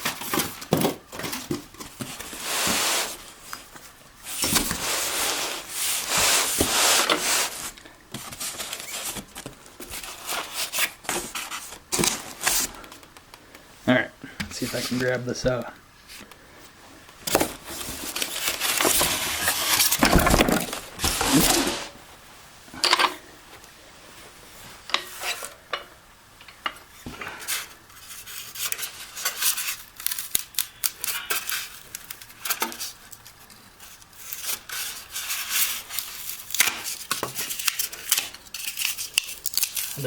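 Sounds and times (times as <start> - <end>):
cardboard and foam rustling: 0.0 - 13.0, 14.5 - 22.0, 27.0 - 40.0.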